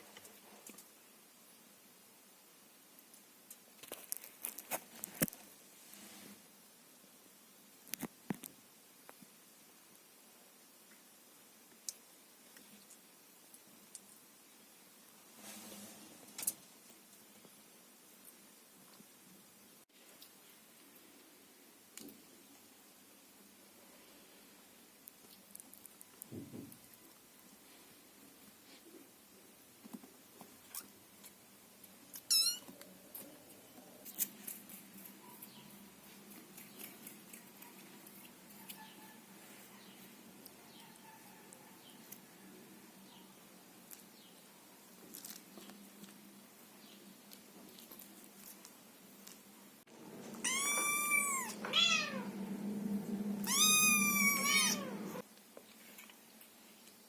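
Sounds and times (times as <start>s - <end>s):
kitten mewing: 50.4s - 52.3s, 53.4s - 55.2s.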